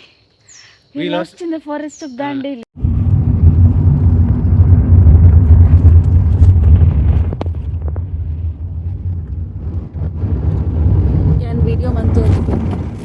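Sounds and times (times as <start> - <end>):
car rumbling on the move: 2.8 - 13.0.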